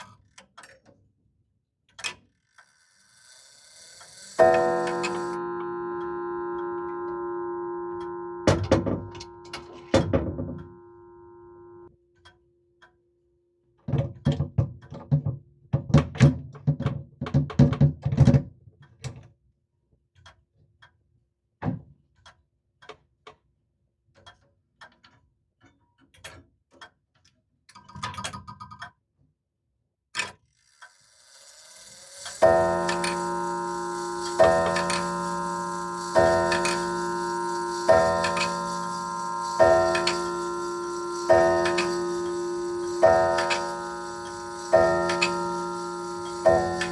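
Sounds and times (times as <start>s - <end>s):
clock struck tone ringing: 3.8s - 11.9s, 31.4s - 46.9s
clock ticking: 4.0s - 10.8s, 31.5s - 46.9s
loud ringing chime strike: 4.4s - 11.9s, 32.4s - 46.9s.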